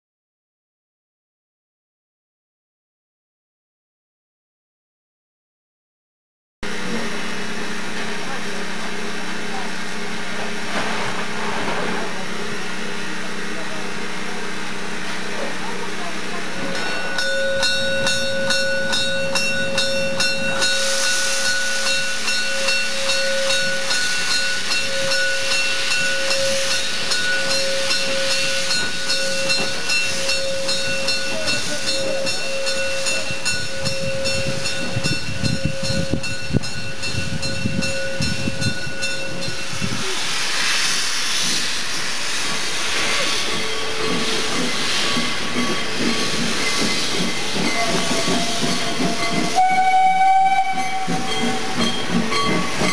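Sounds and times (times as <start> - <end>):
steam hissing: 6.8 - 52.9
exhaust steam surges: 33.3 - 49.8.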